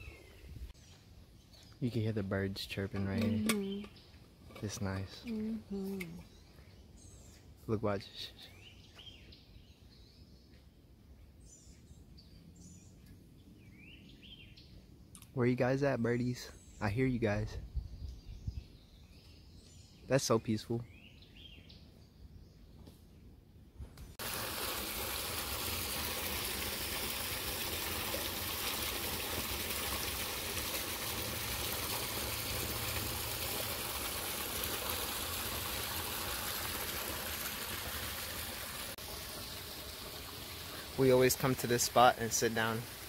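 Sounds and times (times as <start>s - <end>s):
stream water rushing: 24.2s - 43.0s.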